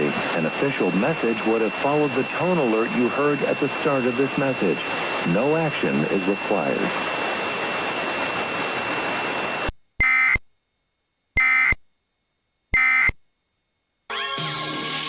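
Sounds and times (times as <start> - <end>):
data tone bursts: 10.0 - 10.4, 11.4 - 11.8, 12.8 - 13.2.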